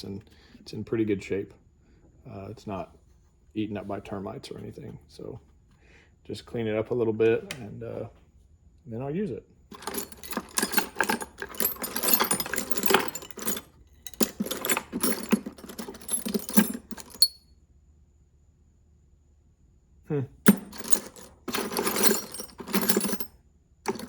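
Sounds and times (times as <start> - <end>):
metal tools clinking: 9.7 - 17.4, 20.5 - 23.3.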